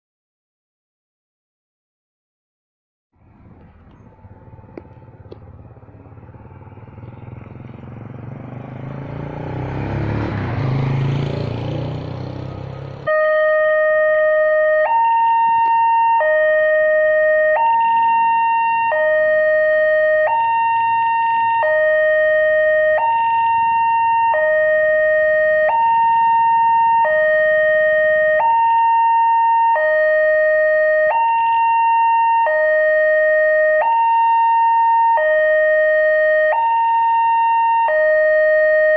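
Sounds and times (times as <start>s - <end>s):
rumbling noise: 3.2s - 7.2s
two-tone level crossing siren: 3.6s - 38.9s.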